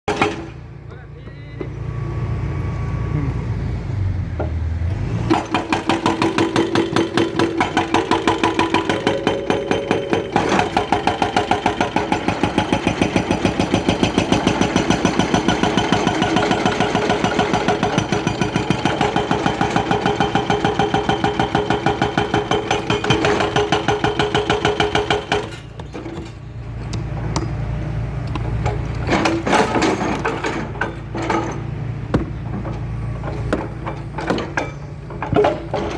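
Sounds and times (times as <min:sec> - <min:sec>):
hydraulic breaker hammering asphalt: 0:00.1 - 0:00.6, 0:05.3 - 0:27.6
diesel engine running: 0:00.5 - 0:35.9.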